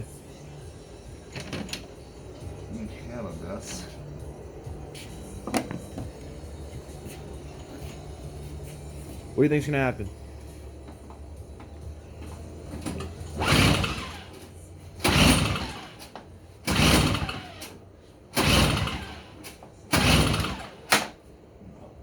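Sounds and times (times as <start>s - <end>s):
two-stroke engine cranking: 12.6s - 21.2s.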